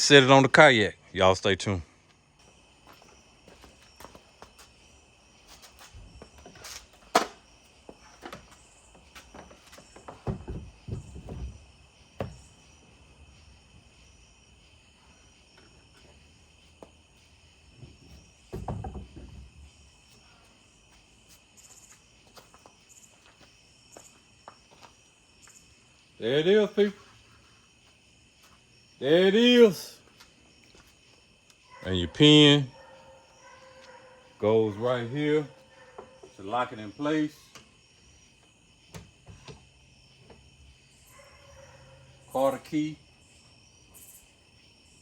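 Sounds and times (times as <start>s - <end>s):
insects chirring: 0.0s - 45.0s
heavy thuds: 9.3s - 12.8s.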